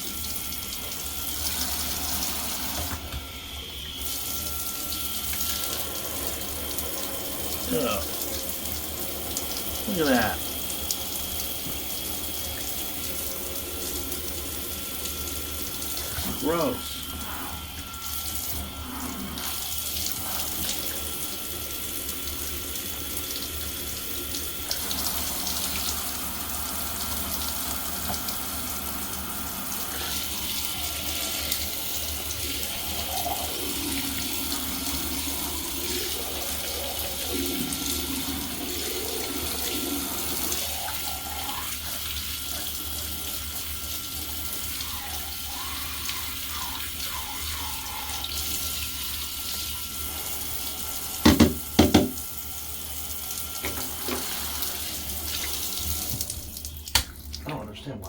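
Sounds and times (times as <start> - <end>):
water splashing over a filter: 51.2 - 52.4, 53.4 - 57.8.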